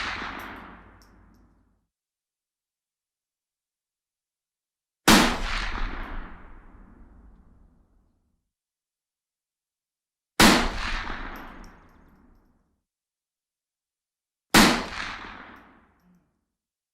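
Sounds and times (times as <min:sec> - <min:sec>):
rifle shot crack: 0:10.4 - 0:11.7.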